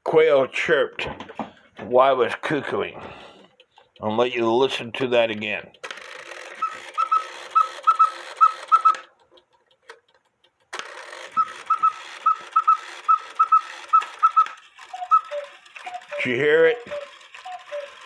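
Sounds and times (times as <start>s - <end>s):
clock bellows whistled pips: 6.5s - 9.1s, 11.3s - 18.0s.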